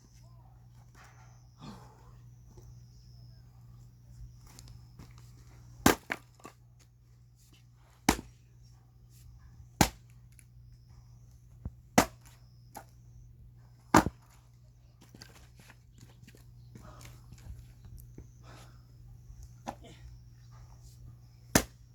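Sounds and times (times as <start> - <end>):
axe splitting firewood: 5.8 - 6.6, 8.0 - 8.4, 9.8 - 10.1, 12.0 - 12.9, 13.9 - 14.4, 21.5 - 21.9.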